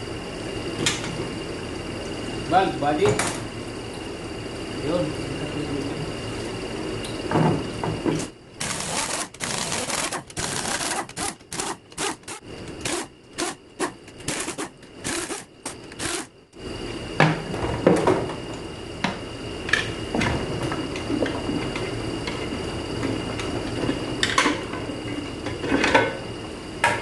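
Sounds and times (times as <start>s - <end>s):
air ratchet bursts: 8.6s - 16.3s.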